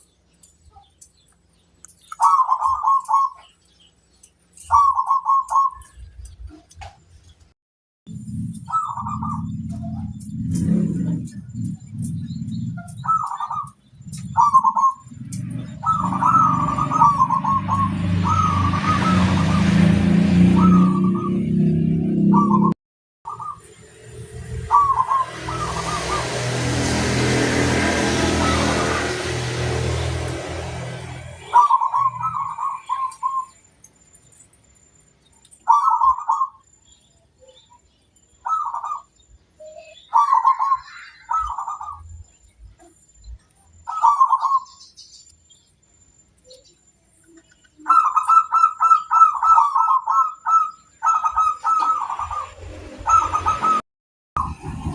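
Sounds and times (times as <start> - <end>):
dove cooing: 2.2 - 3.5, 4.6 - 6.0, 8.6 - 19.7, 20.4 - 21.4, 24.6 - 26.4, 31.4 - 33.5, 35.6 - 36.6, 38.4 - 42.1, 43.8 - 44.8, 47.3 - 53.8
loud rushing noise: 23.7 - 31.6, 54.4 - 54.9
faint high chirps: 31.6 - 48.6
steady low rumble: 54.4 - 54.9.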